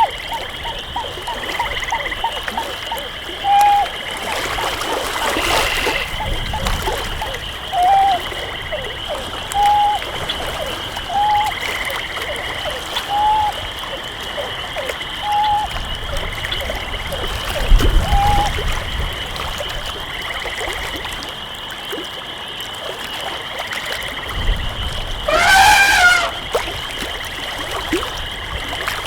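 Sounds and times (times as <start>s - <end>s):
insects trilling: 0.0s - 29.0s
frog calling short clear note: 5.3s - 6.3s, 25.3s - 26.5s.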